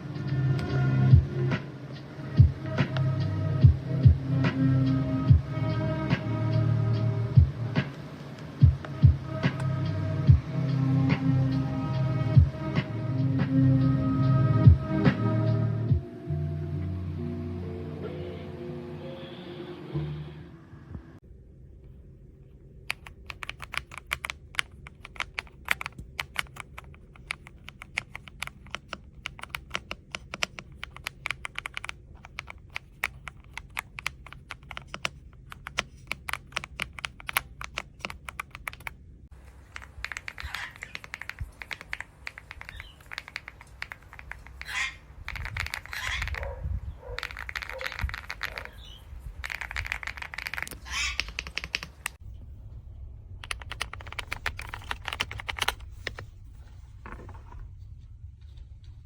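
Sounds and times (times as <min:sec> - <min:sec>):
mechanical keyboard key clacks: 0:22.9 - 0:38.9, 0:39.8 - 0:44.7, 0:45.3 - 0:46.4, 0:47.2 - 0:48.8, 0:49.4 - 0:52.2, 0:53.4 - 0:56.2.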